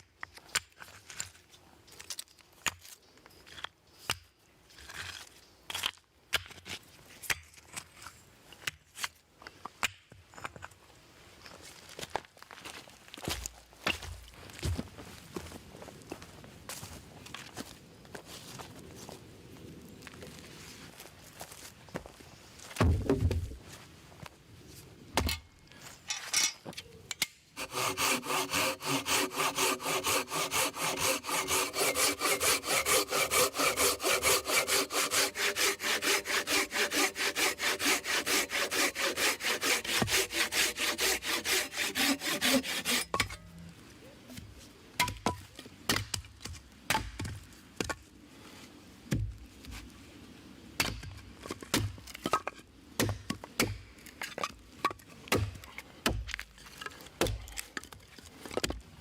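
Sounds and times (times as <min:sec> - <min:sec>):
hand saw cutting wood: 0:27.6 - 0:43.4.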